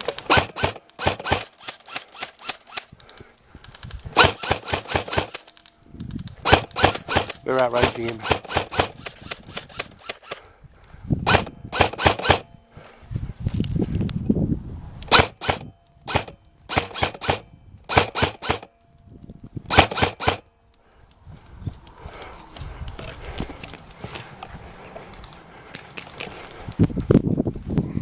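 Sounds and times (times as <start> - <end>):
airsoft gun firing bursts: 0.0 - 2.9, 4.0 - 5.5, 6.4 - 10.5, 11.2 - 12.5, 15.1 - 18.7, 19.7 - 20.5
handling rustle: 0.0 - 11.0, 12.5 - 14.2.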